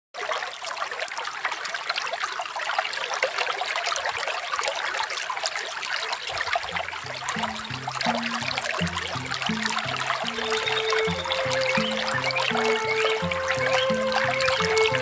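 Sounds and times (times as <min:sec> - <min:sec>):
small waterfall splashing: 0:00.2 - 0:15.0
soft low music notes: 0:06.4 - 0:15.0.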